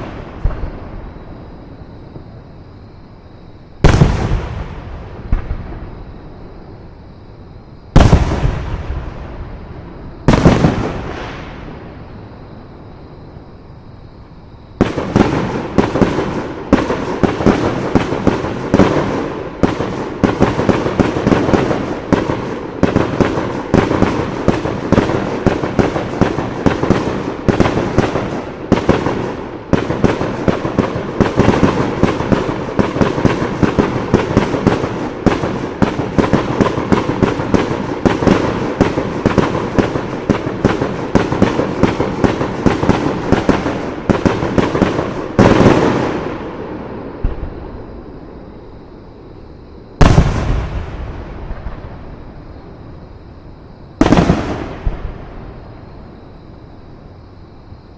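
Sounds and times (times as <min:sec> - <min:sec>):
fireworks barrage: 0:00.0 - 0:02.2, 0:03.8 - 0:06.4, 0:07.9 - 0:12.2, 0:14.8 - 0:48.3, 0:50.0 - 0:52.8, 0:54.0 - 0:55.9.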